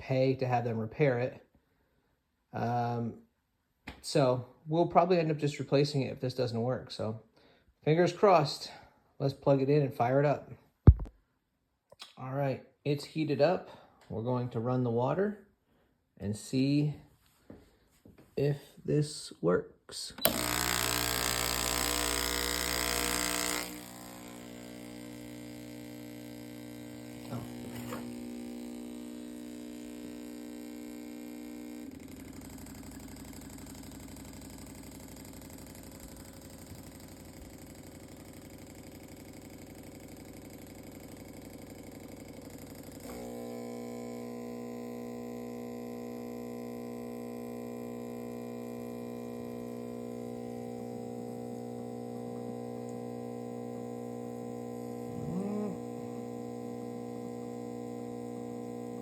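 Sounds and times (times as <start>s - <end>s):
espresso machine pump buzzing: 20.2s - 59.0s.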